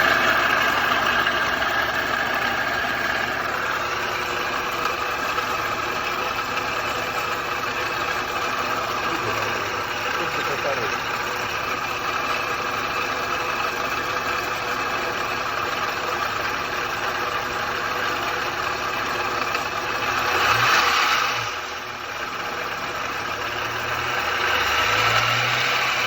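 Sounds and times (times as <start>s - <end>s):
alternator pulley clanking: 0.0s - 15.9s
diesel engine running: 0.0s - 26.0s.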